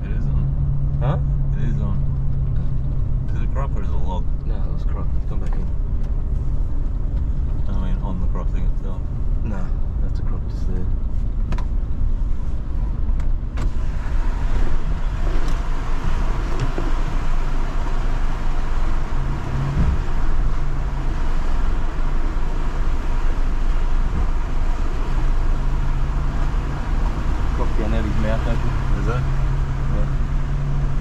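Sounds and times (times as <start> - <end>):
tyre and road noise: 0.0 - 31.0
low engine drone: 12.8 - 31.0.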